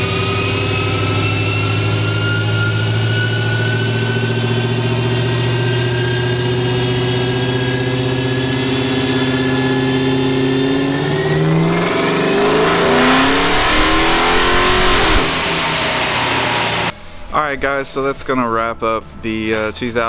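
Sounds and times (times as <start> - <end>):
car engine revving at full throttle: 0.0 - 17.0.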